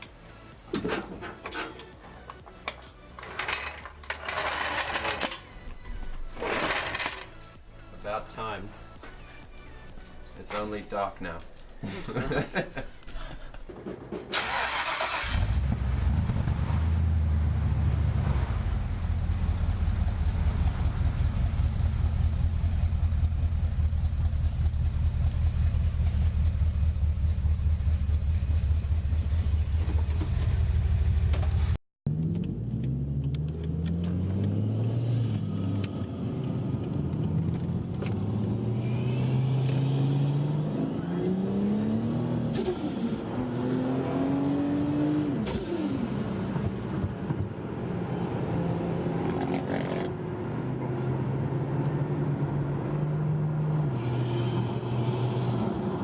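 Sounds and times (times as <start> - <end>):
car engine starting and idling: 14.3 - 38.4
car engine accelerating hard: 14.4 - 47.0.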